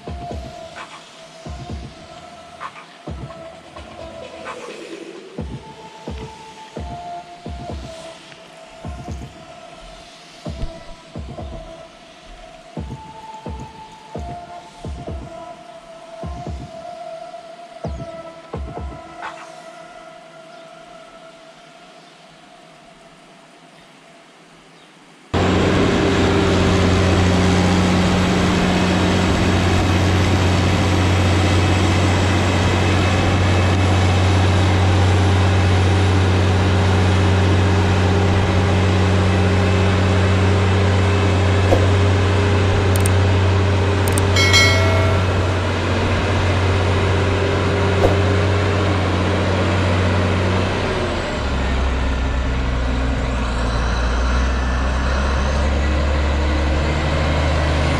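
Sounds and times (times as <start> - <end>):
tractor engine humming: 25.4 - 57.9.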